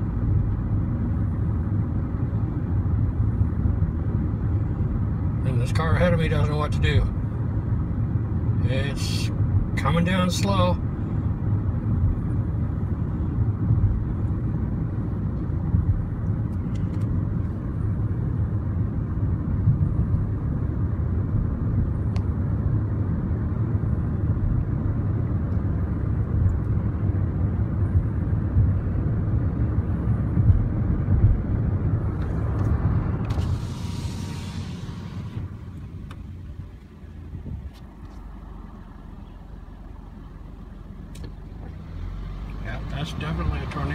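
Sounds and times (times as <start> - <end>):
car road and engine rumble: 0.0 - 43.9
brief hiss: 33.2 - 35.5.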